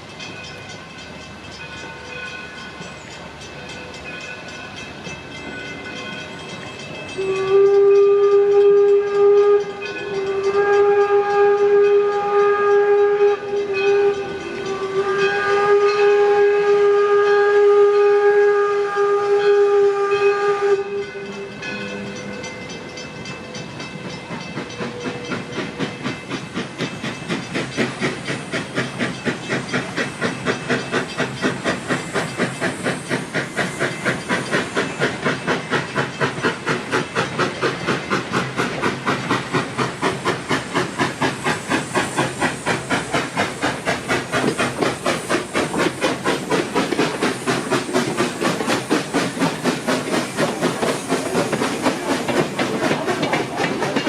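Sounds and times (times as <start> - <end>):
steam locomotive chuffing: 0.0 - 54.0
steam whistle: 7.1 - 24.2.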